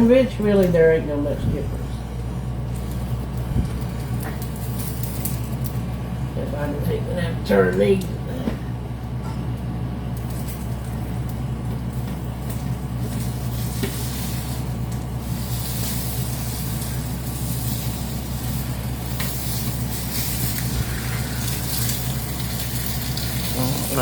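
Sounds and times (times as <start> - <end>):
steady low hum: 0.0 - 24.0
food sizzling in hot oil: 11.9 - 24.0.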